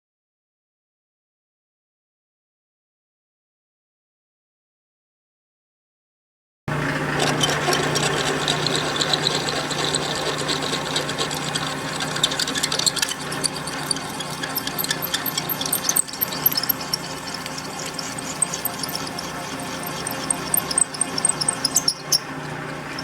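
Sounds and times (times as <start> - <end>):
spindle motor humming: 6.7 - 23.0
drill bit cutting steel: 7.1 - 23.0.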